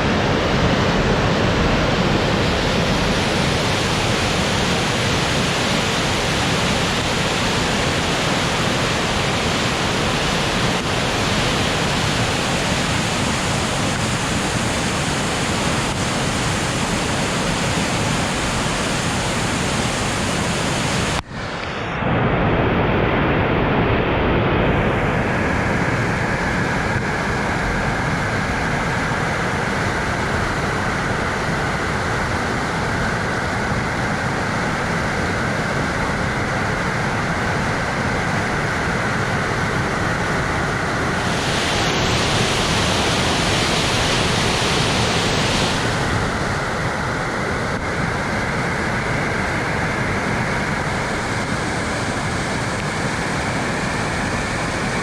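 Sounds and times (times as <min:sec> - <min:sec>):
river water rushing: 0:00.0 - 0:21.8, 0:25.9 - 0:55.0.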